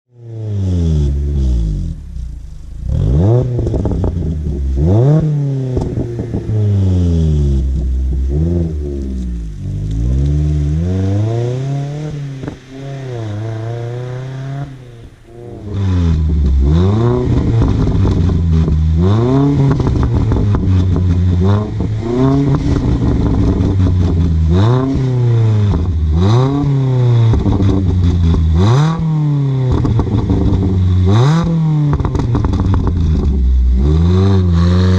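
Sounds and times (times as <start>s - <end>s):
car engine revving: 0.1s - 34.9s
exhaust crackles and pops: 0.2s - 34.9s.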